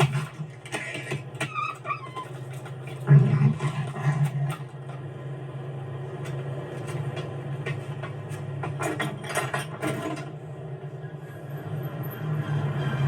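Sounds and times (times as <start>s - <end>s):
low mechanical hum: 0.0s - 13.0s
rapid clicking and rattling: 6.2s - 10.4s.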